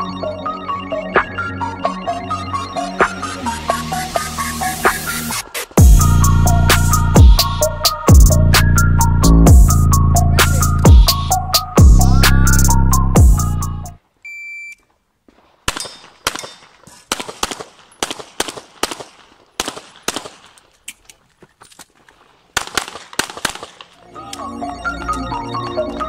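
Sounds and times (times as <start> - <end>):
shot timer beep: 14.3 - 14.8
handgun shots: 15.7 - 20.6, 22.6 - 24.0.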